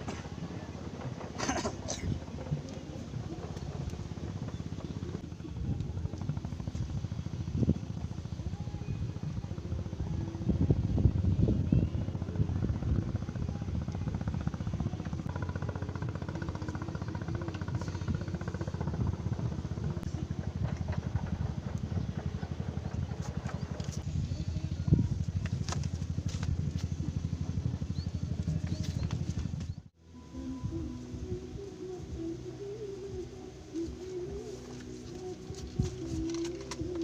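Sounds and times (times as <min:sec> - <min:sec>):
motor running with low pulse: 0:00.0 - 0:37.0.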